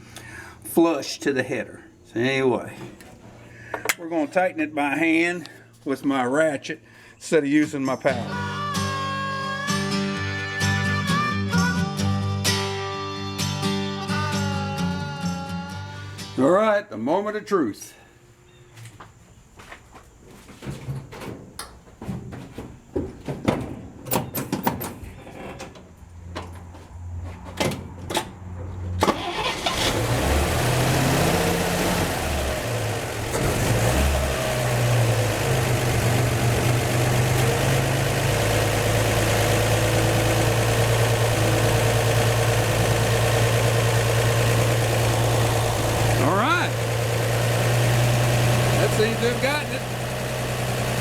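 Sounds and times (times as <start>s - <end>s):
engine cranking: 29.0s - 51.0s
engine idling: 29.1s - 51.0s.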